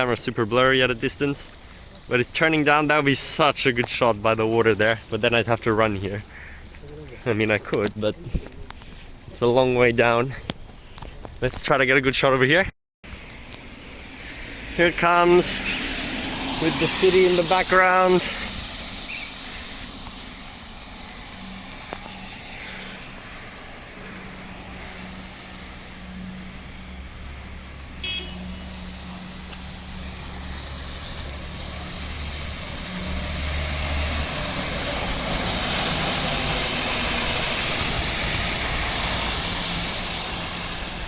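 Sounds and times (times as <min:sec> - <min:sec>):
bus engine humming: 0:13.1 - 0:41.0.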